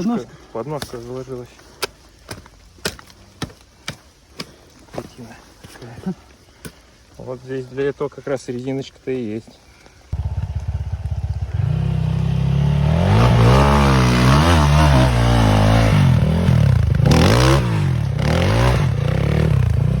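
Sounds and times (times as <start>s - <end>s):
motorcycle engine revving: 10.2s - 20.0s.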